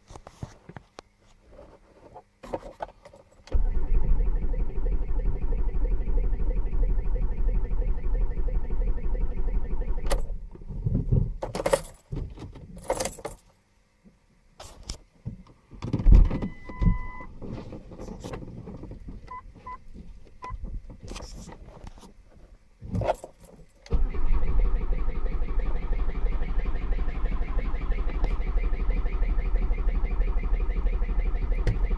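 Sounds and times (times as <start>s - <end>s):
car engine cranking: 3.5s - 8.1s, 23.9s - 28.6s
car beeps: 3.6s - 10.2s, 16.4s - 17.3s, 19.3s - 19.8s, 24.0s - 31.9s
keys jangling in ignition: 12.8s - 13.5s.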